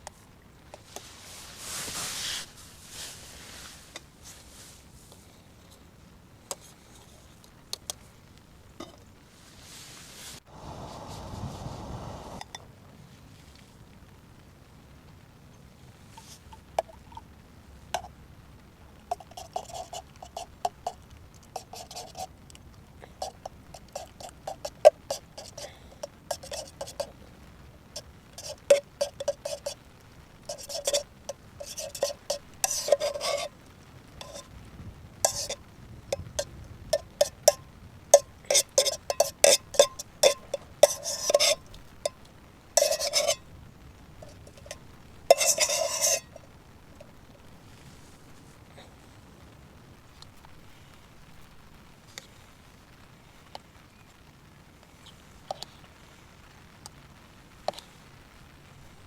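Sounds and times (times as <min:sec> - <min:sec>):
metal spoon clinking on pot: 0:28.4 - 0:29.8, 0:30.5 - 0:33.5, 0:34.2 - 0:34.5, 0:35.2 - 0:35.6, 0:36.2 - 0:43.4, 0:44.2 - 0:46.4.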